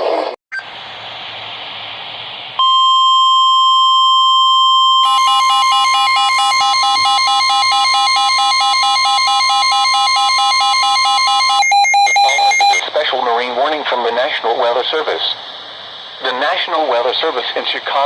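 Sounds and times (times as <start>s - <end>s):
rapid pulsing beep: 2.6s - 12.8s
steady warning alarm tone: 2.6s - 12.8s.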